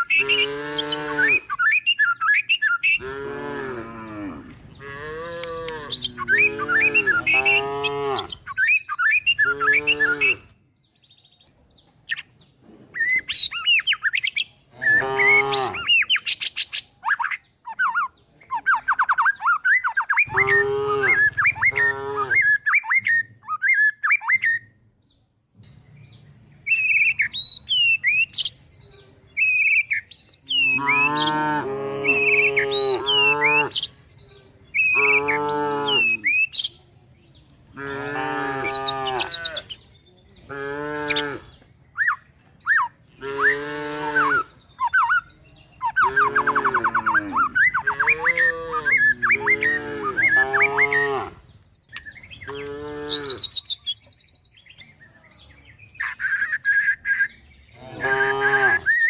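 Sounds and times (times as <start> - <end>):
small birds chirping: 0.0 - 59.0
cattle mooing: 0.1 - 1.4, 3.0 - 8.4, 9.4 - 10.4, 14.8 - 15.8, 20.3 - 22.5, 30.6 - 33.7, 37.8 - 39.7, 43.2 - 44.5, 46.0 - 51.4, 52.5 - 53.4, 57.8 - 58.9.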